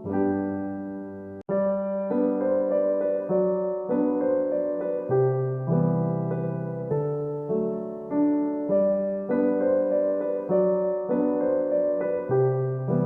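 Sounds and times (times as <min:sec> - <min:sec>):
gentle solo piano: 0:00.0 - 0:13.0.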